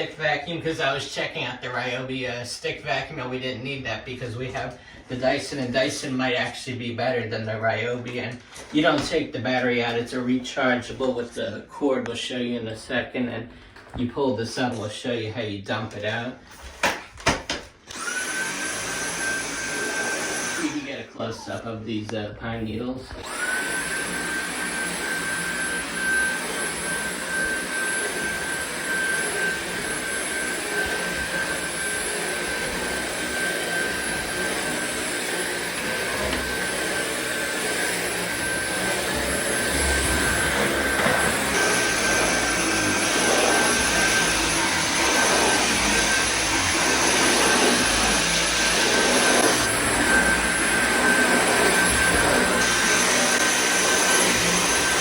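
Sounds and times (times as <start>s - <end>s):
stick vacuum running: 16.8s - 21.6s, 23.1s - 55.0s.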